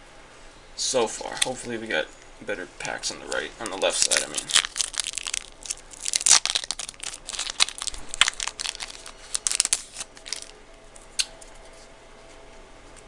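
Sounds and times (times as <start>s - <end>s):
foil wrapper crinkling: 3.0s - 11.8s.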